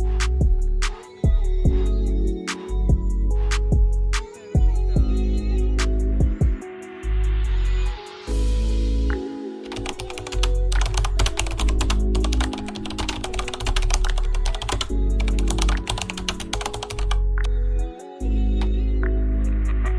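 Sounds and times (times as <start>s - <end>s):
music with deep bass: 0.0s - 9.5s, 13.6s - 19.9s.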